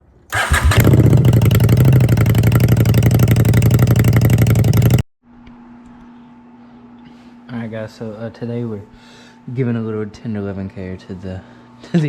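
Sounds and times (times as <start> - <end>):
motorcycle engine running: 0.3 - 5.0.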